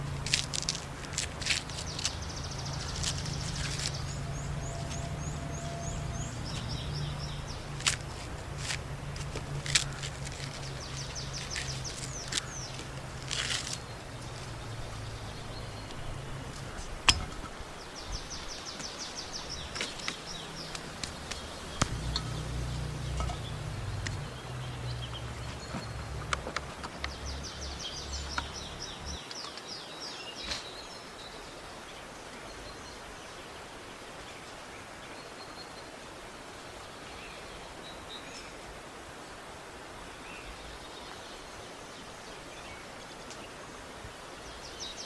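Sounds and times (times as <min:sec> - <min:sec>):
low rumble: 0:00.0 - 0:17.4, 0:20.3 - 0:29.2
sharp clicks and knocks: 0:16.8 - 0:17.6.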